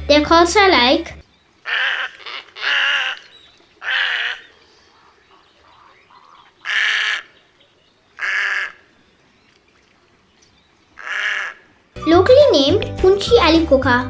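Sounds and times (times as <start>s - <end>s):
egret harsh calls: 1.6s - 7.5s, 8.2s - 8.9s, 11.0s - 11.8s.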